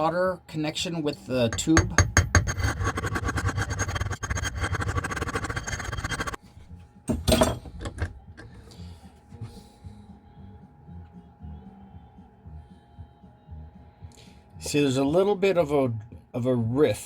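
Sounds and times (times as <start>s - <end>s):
metal-on-metal working of copper: 1.3s - 6.4s, 7.1s - 8.7s.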